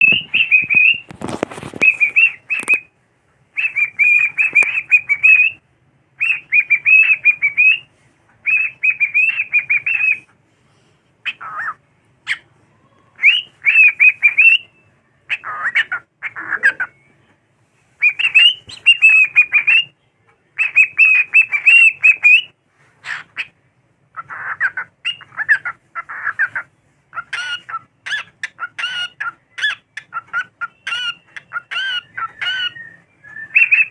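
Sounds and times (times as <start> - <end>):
rustling: 0.0 - 2.8
cockatiel warbling and whistling: 0.0 - 2.9, 3.6 - 5.6, 6.2 - 10.3, 11.2 - 17.2, 18.0 - 20.0, 20.6 - 23.5, 24.1 - 33.9.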